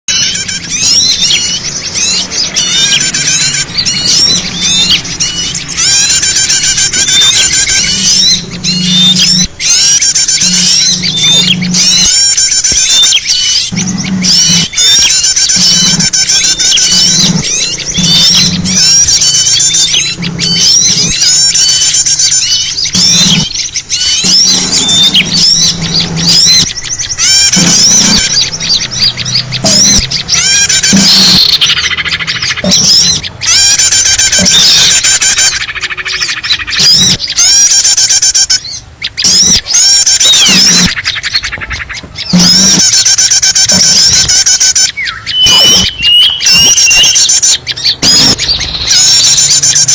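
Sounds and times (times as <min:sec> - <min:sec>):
small birds chirping and squawking: 0:00.0 - 0:49.9
low hum: 0:03.3 - 0:33.4.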